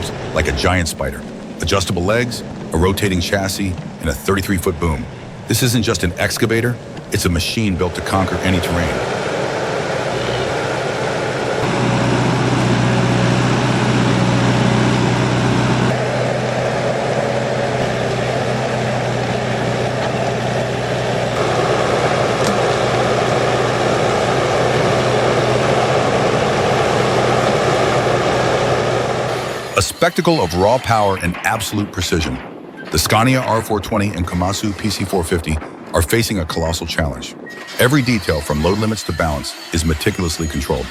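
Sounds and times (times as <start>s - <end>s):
diesel engine droning: 0.0s - 40.9s.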